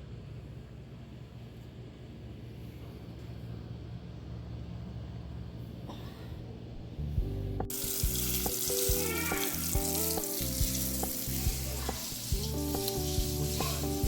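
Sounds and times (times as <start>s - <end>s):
instrumental background music: 7.1s - 14.0s
food sizzling in a pan: 7.7s - 14.0s.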